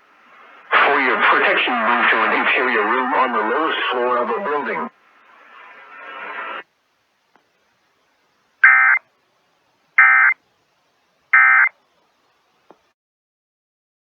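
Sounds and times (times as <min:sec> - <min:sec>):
shrill buzzing data tones: 0:08.6 - 0:09.0, 0:10.0 - 0:10.4, 0:11.4 - 0:11.7.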